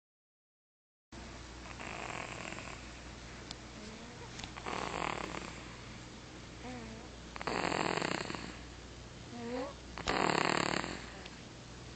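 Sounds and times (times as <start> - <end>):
faint hum: 1.2 - 11.9
baby snoring: 1.7 - 2.8, 3.8 - 5.6, 6.6 - 8.6, 9.3 - 11.3.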